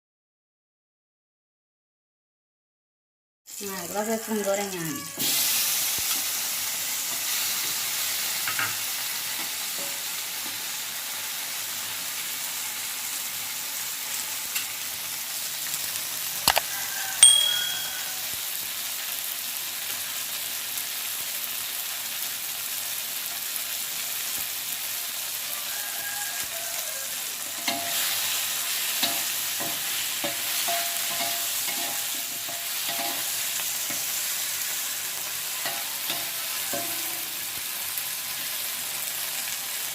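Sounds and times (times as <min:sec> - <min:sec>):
oil sizzling in a pan: 0:03.5 - 0:39.9
sharp metallic clink: 0:17.2 - 0:18.2
spatula scraping a pan: 0:27.4 - 0:37.4.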